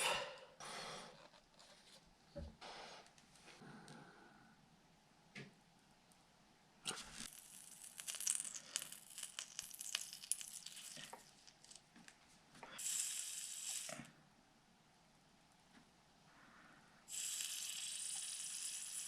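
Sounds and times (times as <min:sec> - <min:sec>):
solder sizzling and crackling: 0:06.8 - 0:14.1, 0:17.1 - 0:19.0.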